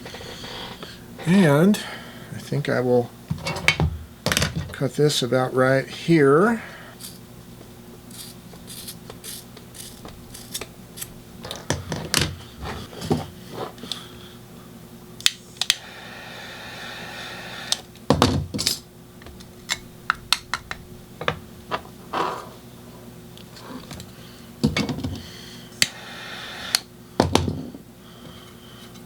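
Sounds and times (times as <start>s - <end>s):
rasping stretch: 8.1s - 11.1s
shears cutting webbing strap: 8.1s - 11.2s.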